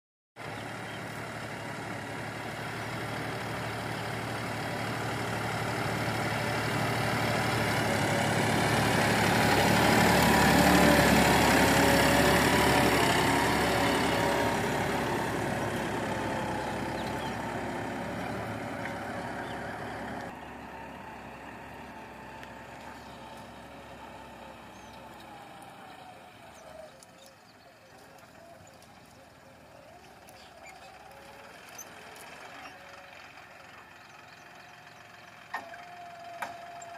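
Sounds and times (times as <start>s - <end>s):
tractor engine running: 0.4s - 36.9s.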